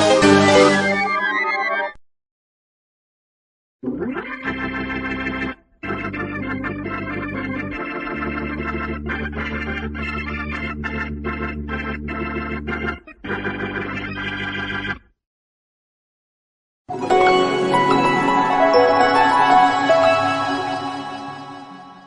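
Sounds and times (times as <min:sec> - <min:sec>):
keyboard music jingle: 0:00.0 - 0:02.0, 0:16.9 - 0:22.0.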